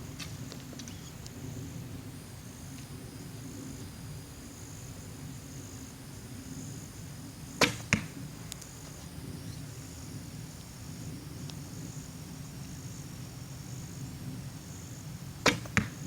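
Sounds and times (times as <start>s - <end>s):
arrow striking target: 7.6s - 8.1s, 15.4s - 16.0s.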